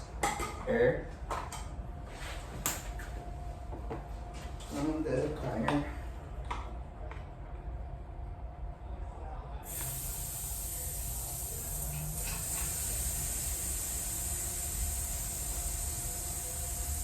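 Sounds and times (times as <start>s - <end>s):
air hissing out of tire valve: 9.6s - 17.0s.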